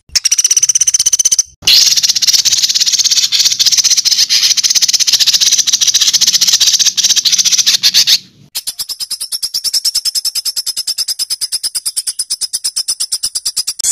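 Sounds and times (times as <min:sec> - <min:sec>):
songbird chatter: 0:00.0 - 0:13.9.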